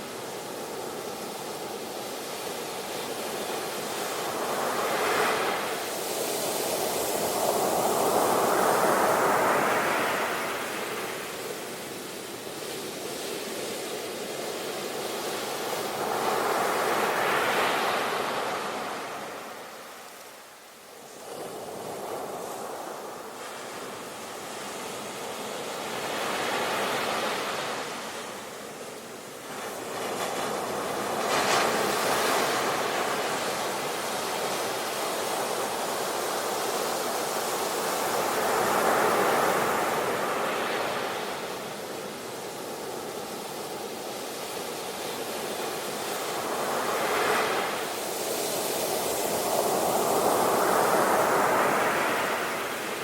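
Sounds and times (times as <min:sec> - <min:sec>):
ocean waves breaking on shore: 0:00.0 - 0:53.0.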